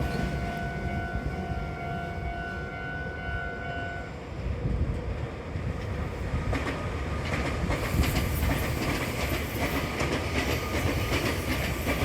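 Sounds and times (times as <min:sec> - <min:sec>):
train low rumble: 0:00.0 - 0:12.0
train wheels clattering over rail joints: 0:05.8 - 0:12.0.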